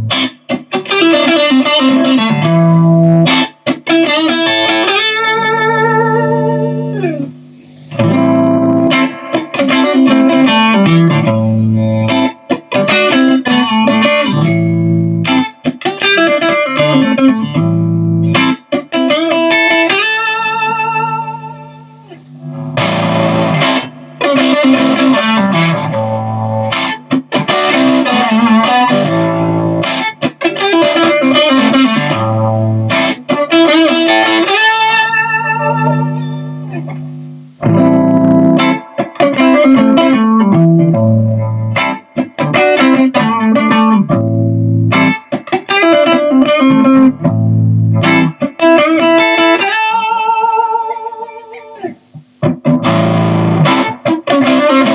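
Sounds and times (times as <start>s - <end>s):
overdriven electric guitar: 0.0s - 54.9s.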